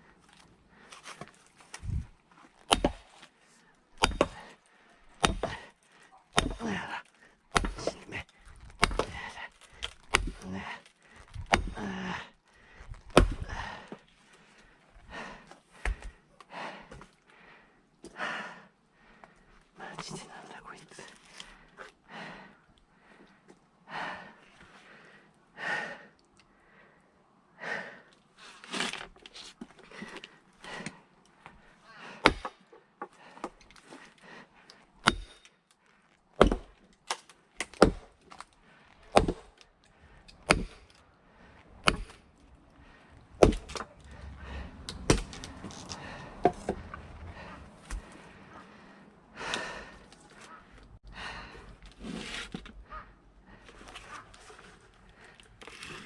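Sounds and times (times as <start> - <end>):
axe striking log: 2.7 - 3.2, 4.0 - 4.5, 5.2 - 5.7, 6.3 - 6.9, 7.5 - 10.6, 11.3 - 11.9, 13.1 - 13.6, 32.2 - 32.6, 35.0 - 35.5, 36.4 - 38.4, 39.1 - 39.6, 40.4 - 41.0, 41.8 - 42.3, 43.4 - 44.0, 44.8 - 47.0, 47.8 - 48.2
heavy breathing: 2.8 - 28.9, 29.6 - 36.8, 37.9 - 56.0.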